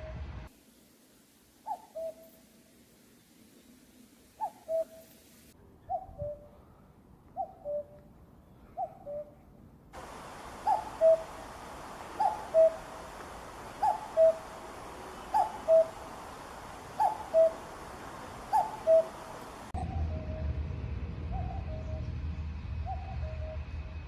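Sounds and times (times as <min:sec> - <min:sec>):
steady hiss: 0:00.5 - 0:05.6, 0:10.0 - 0:19.8
cuckoo calling: 0:01.6 - 0:02.4, 0:04.4 - 0:05.2, 0:07.4 - 0:08.0, 0:08.8 - 0:09.4, 0:10.0 - 0:20.4
low rumble: 0:19.8 - 0:24.0.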